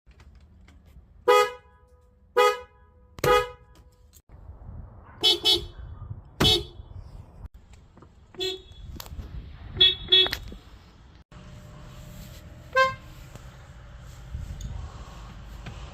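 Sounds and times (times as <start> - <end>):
car horns honking: 1.2 - 3.9, 5.0 - 5.8, 6.4 - 6.9, 8.3 - 8.9, 9.8 - 10.6, 12.6 - 13.2.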